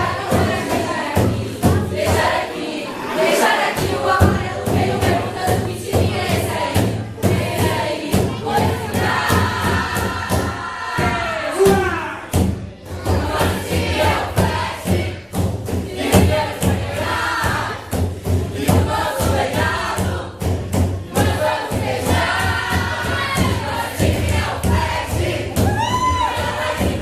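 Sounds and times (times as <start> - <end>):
crowd shouting and chanting: 0.0 - 17.9, 21.1 - 27.0.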